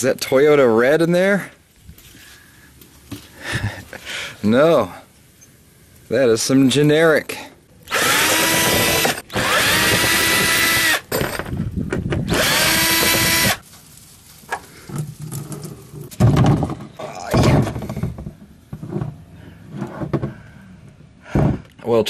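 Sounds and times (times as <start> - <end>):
power drill whining: 7.9 - 11.4, 12.3 - 13.6.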